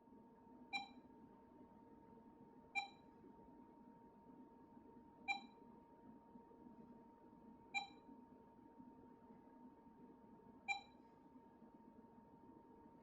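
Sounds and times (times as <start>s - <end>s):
faint steady hum: 0.0s - 13.0s
short electronic beeps: 0.8s - 1.0s, 2.8s - 3.0s, 5.3s - 5.5s, 7.8s - 8.0s, 10.7s - 10.9s.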